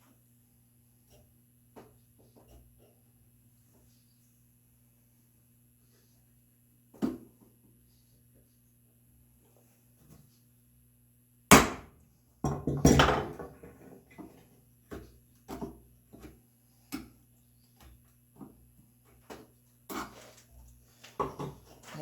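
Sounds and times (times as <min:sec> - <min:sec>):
hand tools knocking on wood: 0:12.4 - 0:13.8.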